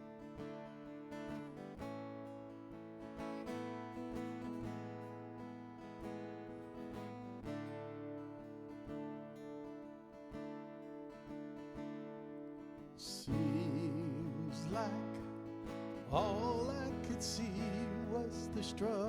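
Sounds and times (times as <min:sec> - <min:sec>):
acoustic guitar strumming chords: 0:00.0 - 0:19.0.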